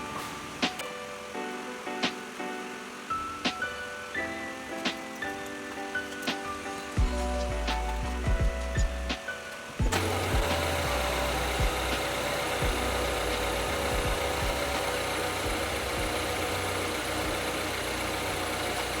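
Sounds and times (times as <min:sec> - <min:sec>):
low thumps: 0:07.0 - 0:09.2
car engine idling: 0:09.9 - 0:19.0.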